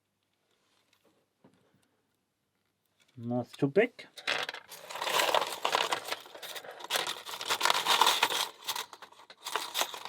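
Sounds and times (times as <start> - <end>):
rustling and crinkling: 4.2 - 10.0.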